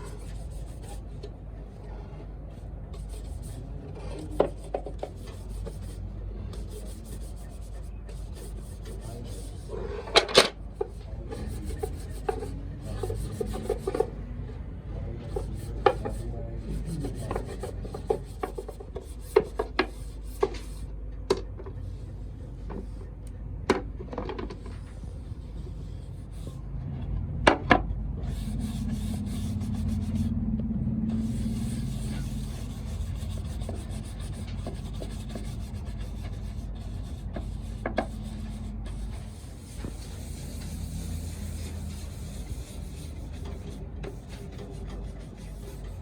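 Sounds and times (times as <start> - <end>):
steady low hum: 0.0 - 46.0
rasping on wood: 3.0 - 6.0, 6.6 - 9.9, 10.8 - 14.1, 15.2 - 20.8, 28.2 - 30.3, 31.1 - 46.0.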